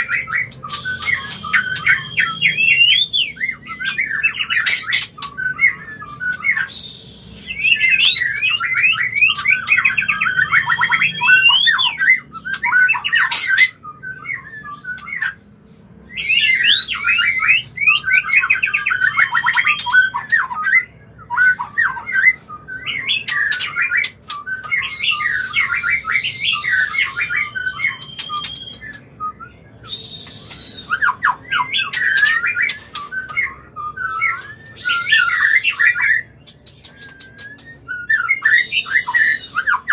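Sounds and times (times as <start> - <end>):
bird whistles and chattering: 0.0 - 15.4, 16.1 - 39.9
bird harsh hissing calls: 0.6 - 3.4, 6.6 - 7.7, 24.8 - 27.6, 29.8 - 31.2, 34.7 - 36.9, 38.4 - 39.9.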